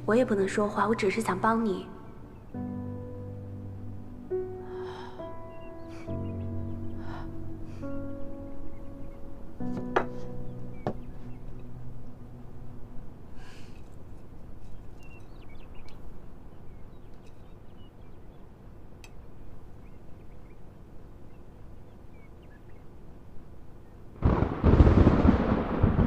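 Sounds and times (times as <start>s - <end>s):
thunder clap rolling: 24.2s - 26.0s.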